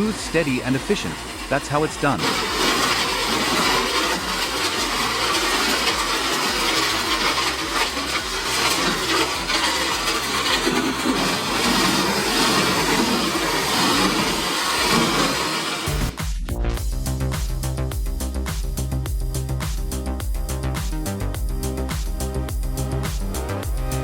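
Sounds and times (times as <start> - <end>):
wood chipper chipping wood: 0.0 - 16.2.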